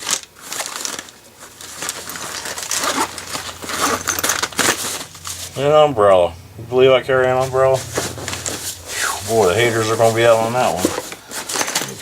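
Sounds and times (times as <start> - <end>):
gear rustling and clicking: 0.0 - 5.8.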